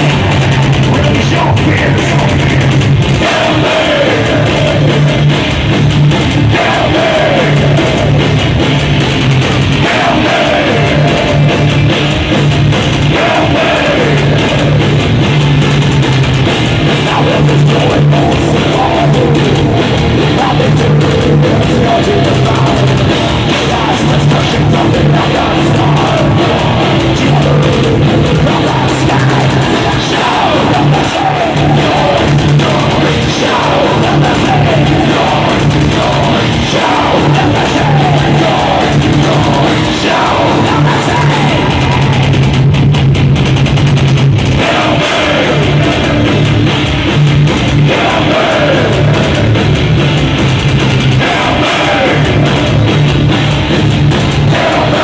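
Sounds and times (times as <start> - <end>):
heavy metal band playing: 0.0 - 55.0
person singing: 16.9 - 42.4, 47.8 - 49.8, 51.2 - 53.0.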